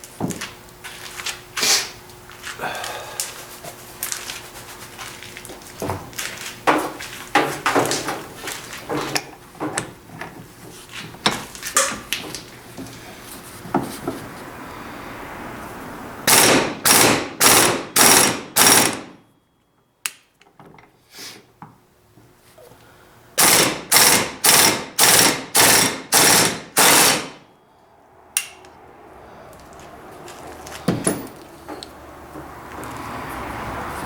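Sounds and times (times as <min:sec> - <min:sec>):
impact wrench hammering: 0:16.2 - 0:19.2, 0:23.4 - 0:27.4, 0:30.9 - 0:31.8.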